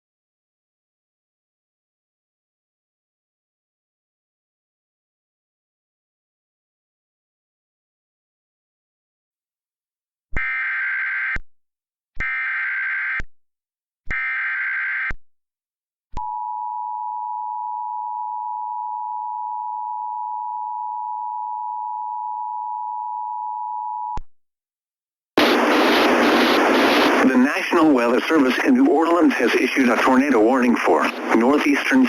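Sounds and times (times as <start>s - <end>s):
data header tones: 25.4s - 32.0s
noisy broadcast message: 25.4s - 32.0s.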